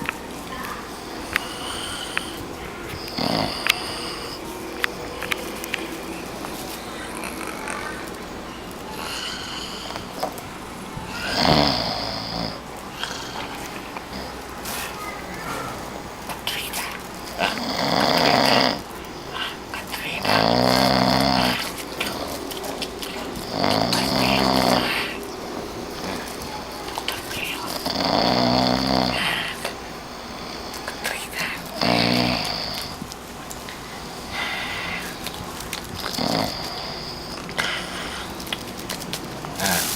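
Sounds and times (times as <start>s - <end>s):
man snoring: 0.9s - 5.3s, 8.9s - 10.4s, 11.0s - 33.1s, 35.9s - 38.5s, 39.4s - 39.9s.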